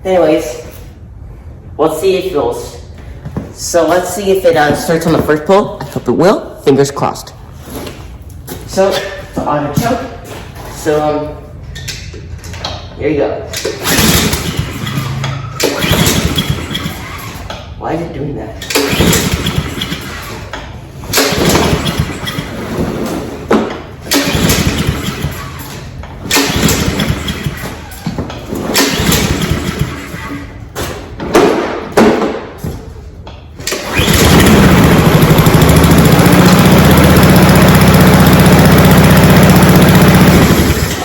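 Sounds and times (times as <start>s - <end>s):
lawn mower engine starting: 13.8s - 17.4s, 18.7s - 20.5s, 21.1s - 22.7s, 24.0s - 27.8s, 28.7s - 30.5s, 33.6s - 41.0s.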